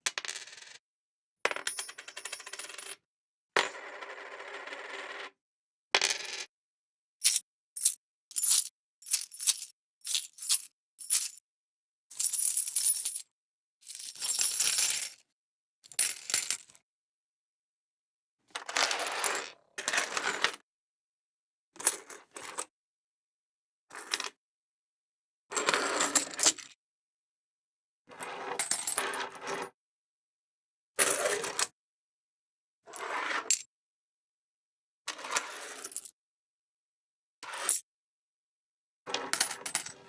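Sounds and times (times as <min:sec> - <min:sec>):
metal coins clinking on hard surface: 0:07.2 - 0:11.4, 0:12.2 - 0:13.2, 0:39.2 - 0:40.0.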